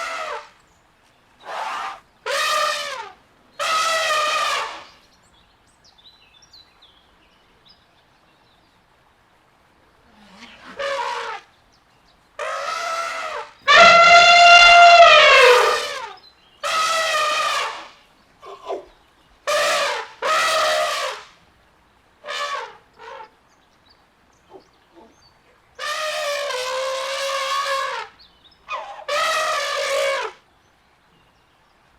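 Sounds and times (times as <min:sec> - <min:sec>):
elephant trumpeting: 0:01.4 - 0:04.9, 0:10.5 - 0:11.5, 0:12.4 - 0:18.8, 0:19.5 - 0:21.3, 0:22.2 - 0:23.3, 0:25.8 - 0:30.4.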